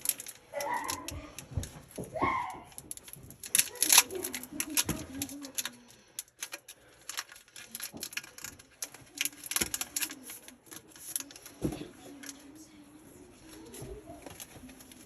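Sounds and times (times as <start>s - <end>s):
foil packs rustling: 0.0s - 2.0s
trading cards clicking and rustling: 0.0s - 12.6s.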